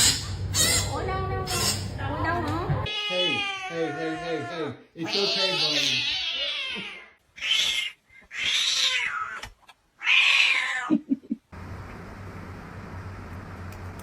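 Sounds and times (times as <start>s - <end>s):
cat meowing: 2.9s - 11.0s.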